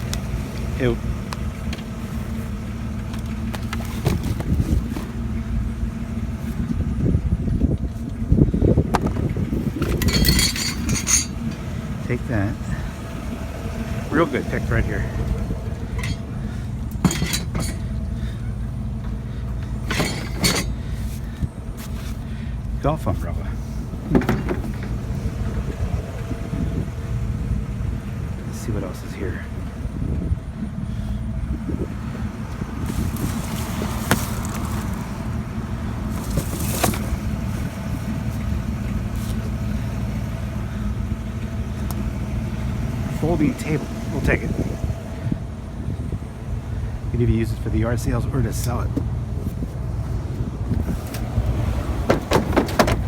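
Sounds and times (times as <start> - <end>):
vehicle engine idling: 0.0 - 53.0
sharp knocks and clatters: 15.8 - 18.0, 19.0 - 20.8, 24.1 - 25.0, 52.0 - 53.0.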